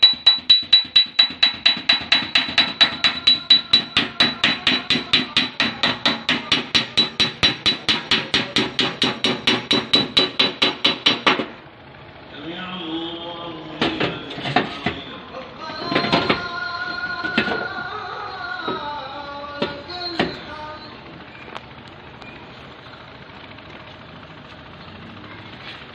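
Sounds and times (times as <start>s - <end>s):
hammer beating metal fender: 0.0s - 11.6s.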